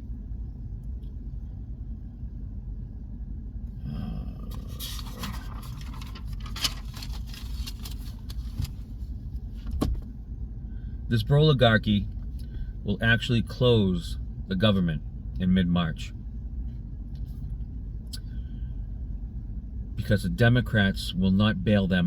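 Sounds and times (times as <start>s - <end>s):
steady low rumble: 0.0s - 22.0s
scraping and rustling: 4.5s - 9.1s.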